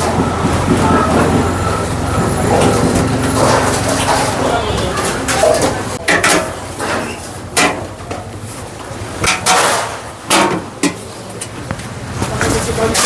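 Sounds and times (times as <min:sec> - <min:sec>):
metal tools clanking: 0:00.0 - 0:08.6
workshop background noise: 0:00.0 - 0:13.0.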